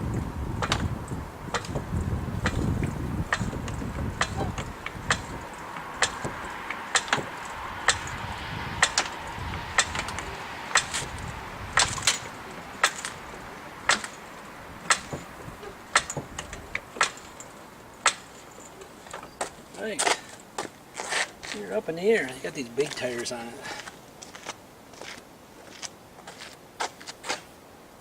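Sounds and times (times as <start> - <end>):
sharp knocks or clicks: 0.1 - 18.3.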